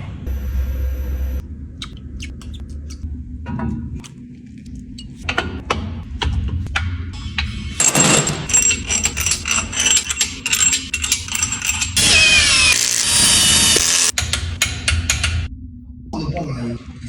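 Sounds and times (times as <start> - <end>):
power tool clattering and whining: 7.8 - 14.2.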